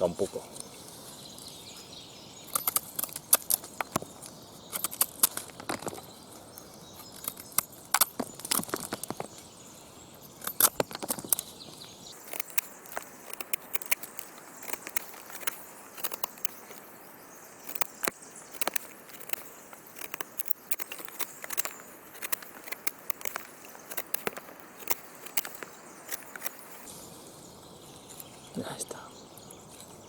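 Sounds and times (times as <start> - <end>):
wood fibres cracking: 10.4 - 26.9
knife cutting dry wood: 12.1 - 26.9.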